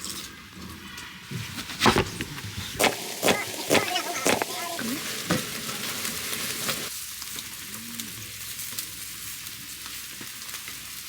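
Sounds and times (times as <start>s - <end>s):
meat sizzling on a grill: 2.8s - 11.0s.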